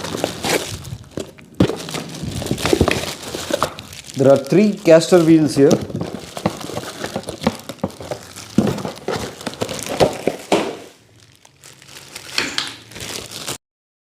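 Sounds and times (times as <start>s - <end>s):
packaging crinkling: 0.0s - 13.6s.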